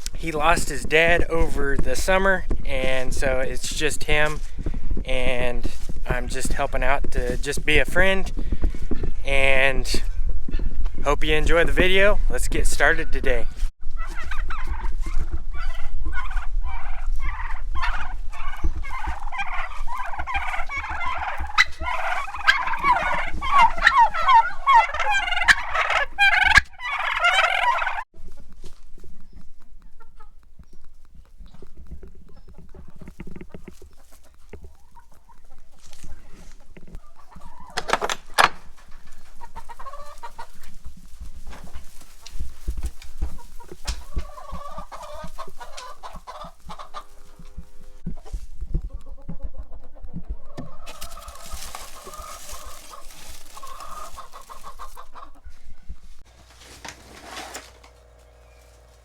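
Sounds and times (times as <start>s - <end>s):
chickens clucking and calling: 13.9s - 59.0s.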